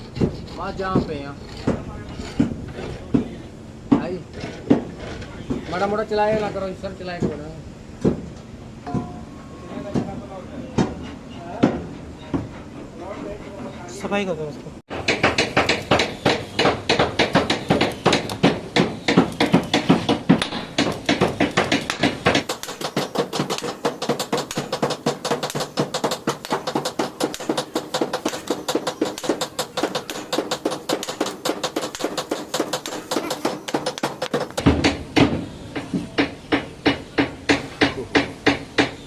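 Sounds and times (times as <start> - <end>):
heavy metal knock: 8.8 - 10.2
metal-on-metal tapping: 16.8 - 39.0.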